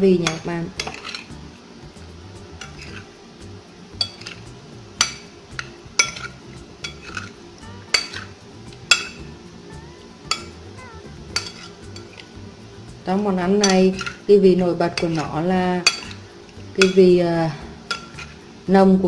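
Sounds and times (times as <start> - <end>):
utensil clinking against bowl: 0.2 - 1.3, 4.0 - 9.3, 10.3 - 10.6, 11.3 - 12.3, 13.6 - 14.3, 15.0 - 17.1, 17.9 - 18.4
food stirred in bowl: 0.2 - 1.5, 2.4 - 3.2, 4.0 - 9.4, 10.3 - 18.6.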